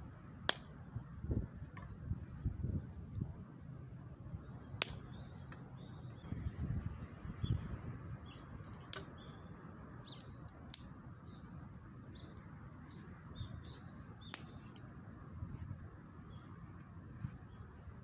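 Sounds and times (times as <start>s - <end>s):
steady low rumble: 0.0s - 18.0s
small birds chirping: 3.8s - 18.0s
sharp clicks: 8.6s - 9.2s.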